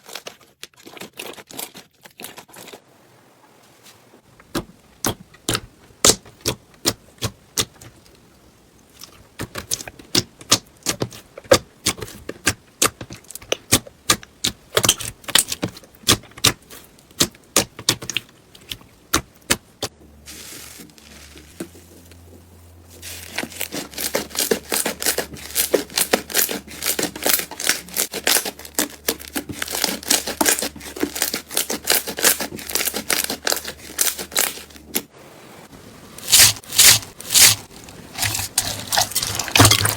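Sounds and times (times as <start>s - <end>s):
slime crackling: 23.0s - 35.0s, 36.2s - 39.9s.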